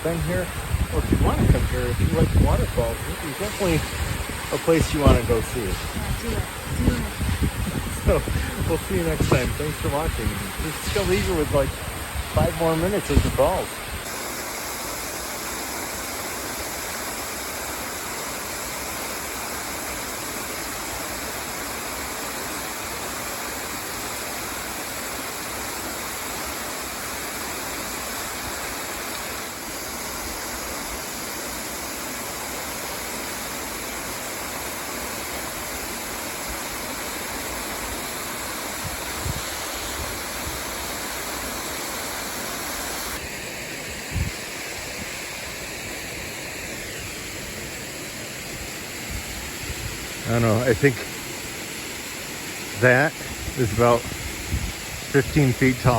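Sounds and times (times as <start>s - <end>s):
waterfall rushing: 0.0s - 55.9s.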